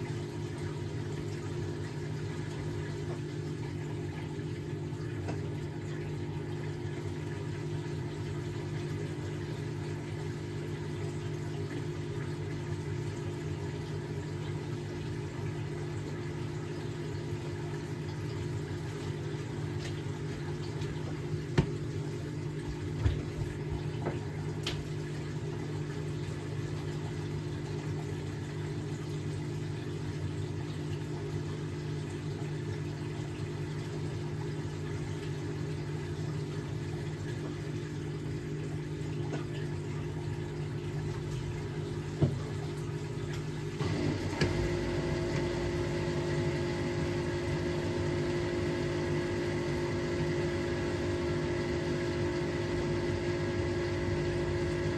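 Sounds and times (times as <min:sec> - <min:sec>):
drain pump running: 0:00.0 - 0:54.9
machine hum with high tones: 0:43.8 - 0:54.9.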